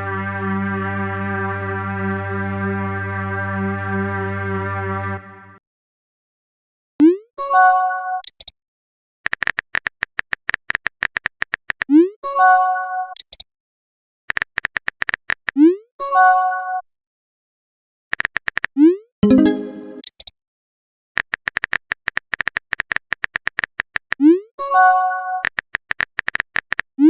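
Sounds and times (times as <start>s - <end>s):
held musical note: 0.0s - 5.6s, 19.2s - 20.0s
synth chord: 0.0s - 5.6s, 19.2s - 20.0s
rapid sharp ticks: 9.2s - 11.9s, 14.3s - 15.6s, 18.1s - 18.7s, 21.2s - 24.2s, 25.4s - 26.9s
high blips: 19.2s - 20.0s.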